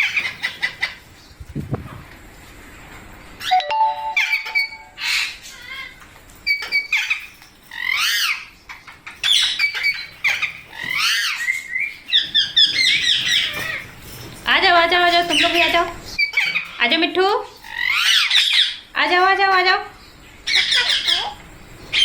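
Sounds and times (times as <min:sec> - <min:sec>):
parakeets squawking: 0:00.0 - 0:01.1, 0:04.2 - 0:13.9, 0:15.1 - 0:19.7, 0:20.4 - 0:22.0.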